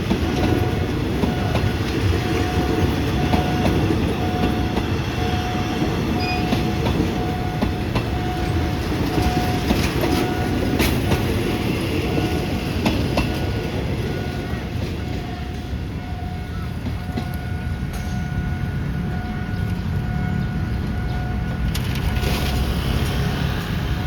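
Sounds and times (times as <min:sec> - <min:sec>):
train rumbling: 0:00.0 - 0:24.0
wheels clicking over rail joints: 0:00.0 - 0:24.0.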